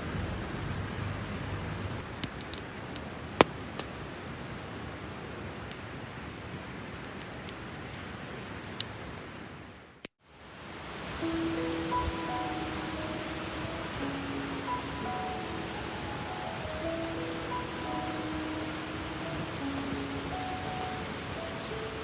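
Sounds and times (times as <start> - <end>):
steady background hiss: 0.0 - 22.0.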